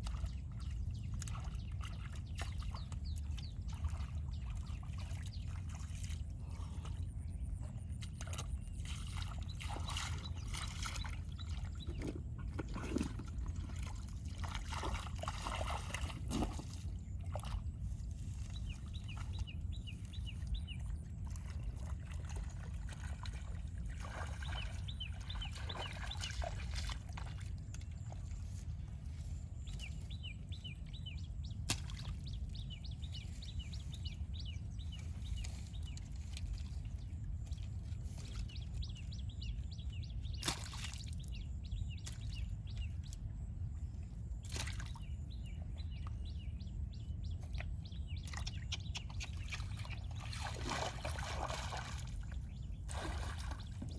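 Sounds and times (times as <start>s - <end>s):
steady low rumble: 0.0s - 53.9s
shallow water splashing: 8.2s - 30.2s, 48.3s - 53.9s.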